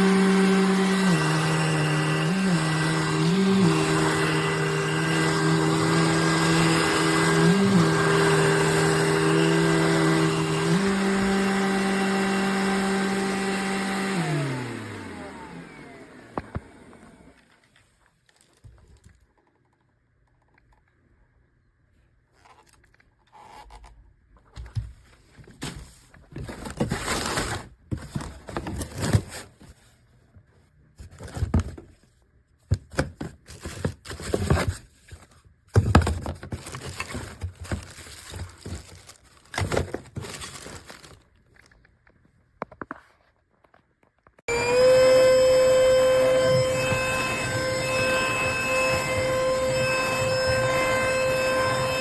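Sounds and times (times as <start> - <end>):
scraping and crinkling: 22.3 - 44.4.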